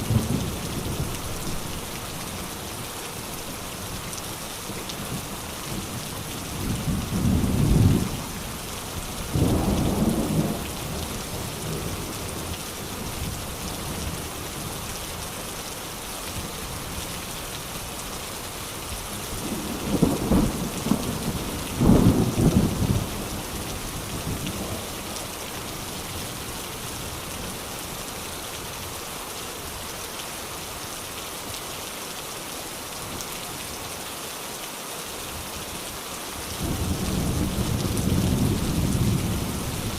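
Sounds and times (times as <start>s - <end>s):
steady rain hissing: 0.0s - 39.9s
low thunder rumbles: 9.2s - 12.5s, 19.4s - 25.3s, 36.6s - 39.9s.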